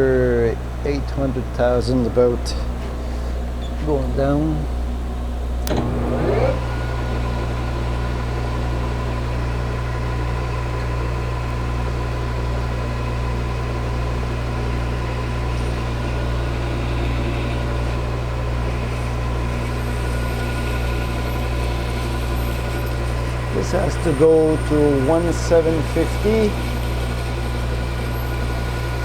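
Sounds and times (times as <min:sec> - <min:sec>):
metal lathe humming: 0:00.0 - 0:29.0.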